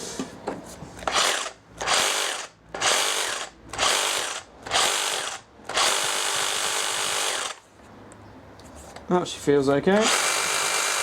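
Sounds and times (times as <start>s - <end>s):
reciprocating saw running: 1.1s - 7.6s, 10.0s - 11.0s.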